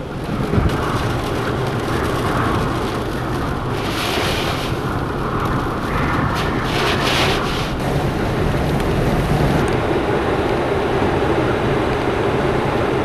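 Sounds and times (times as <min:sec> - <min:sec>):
wind buffeting microphone: 0:00.0 - 0:13.0
surf rushing: 0:00.2 - 0:09.8.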